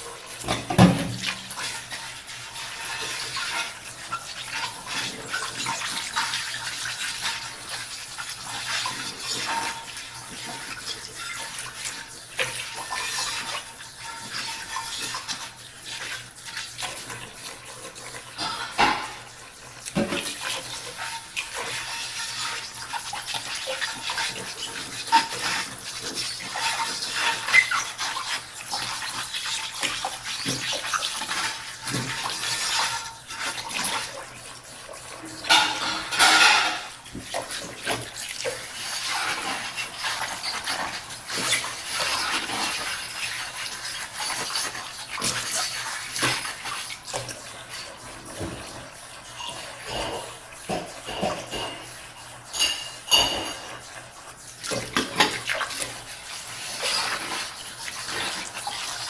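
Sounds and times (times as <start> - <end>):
scrubbing dishes: 0.0 - 59.0
water running in a sink: 0.0 - 59.0
dishes clinking: 0.4 - 1.5, 18.4 - 19.3, 35.3 - 37.0, 49.4 - 53.9.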